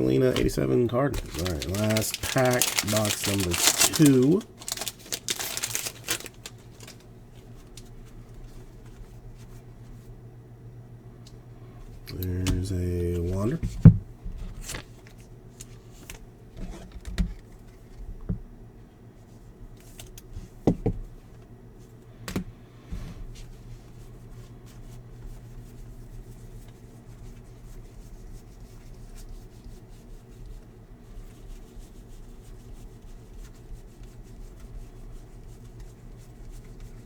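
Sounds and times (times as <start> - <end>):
low steady hum: 0.0 - 37.0
trading cards being flipped: 1.2 - 7.0.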